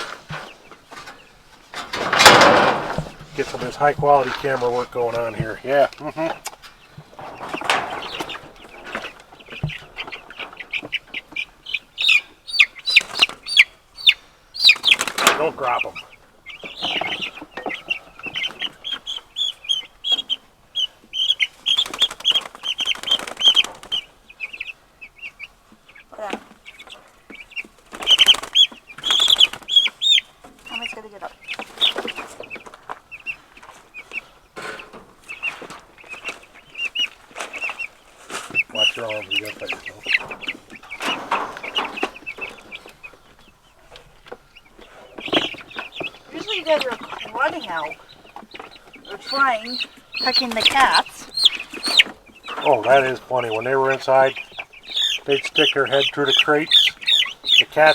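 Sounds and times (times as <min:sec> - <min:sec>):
knocks and rustles of handling: 0:00.0 - 0:11.3, 0:31.6 - 0:47.6
chicks peeping: 0:00.0 - 0:57.9
wings flapping and scuffling: 0:00.0 - 0:57.9.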